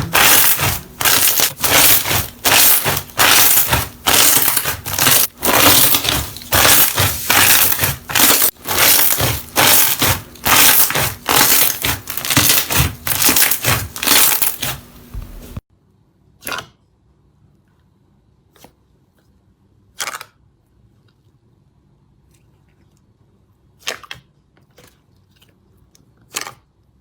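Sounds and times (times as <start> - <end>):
slime crackling when squeezed: 0.0 - 14.7.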